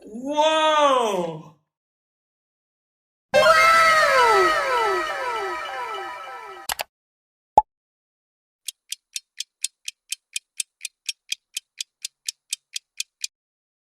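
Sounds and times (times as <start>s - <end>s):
rapid ticking: 8.7s - 13.3s.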